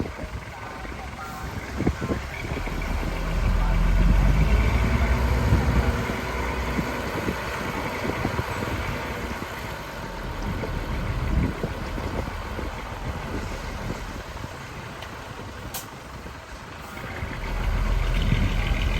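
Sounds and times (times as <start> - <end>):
heavy diesel engine running: 0.0 - 18.9.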